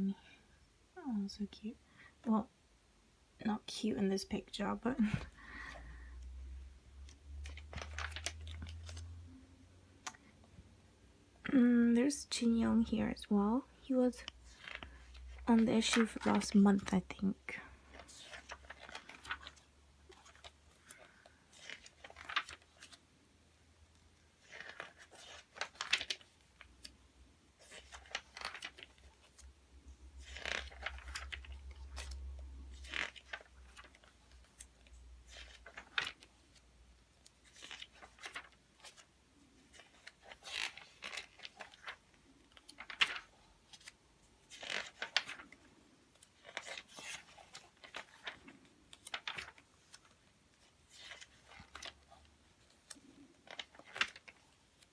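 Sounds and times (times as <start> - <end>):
magazine pages turning: 7.0 - 9.3, 14.2 - 23.1, 24.3 - 54.9.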